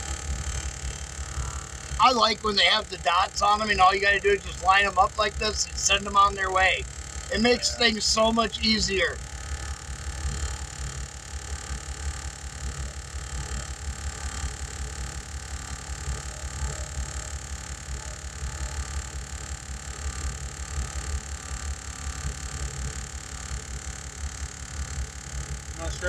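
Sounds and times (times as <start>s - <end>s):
air compressor running: 0.0s - 16.0s.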